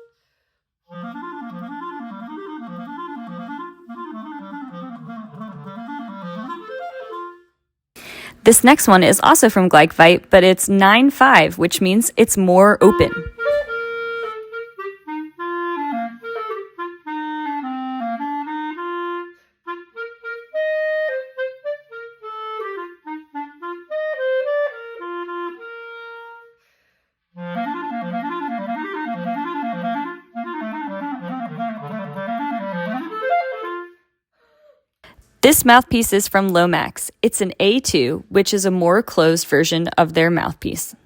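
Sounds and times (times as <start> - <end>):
solo clarinet: 0.0 - 0.2, 0.8 - 7.6, 12.8 - 26.6, 27.3 - 34.2.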